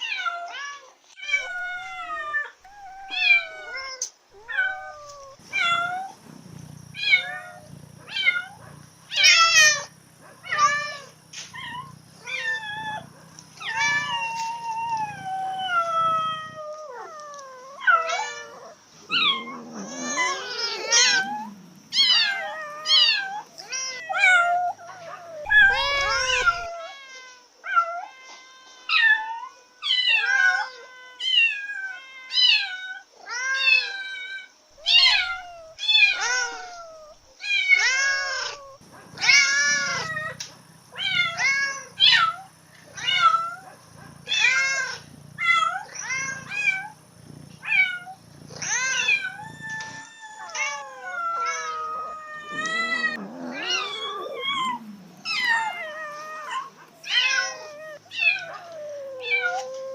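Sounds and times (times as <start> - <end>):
cats meowing: 0.0 - 59.9.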